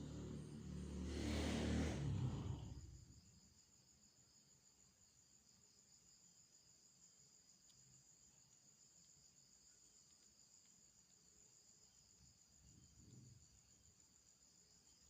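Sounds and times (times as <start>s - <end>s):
vehicle passing by: 0.0s - 3.3s
crickets chirring: 0.0s - 15.0s.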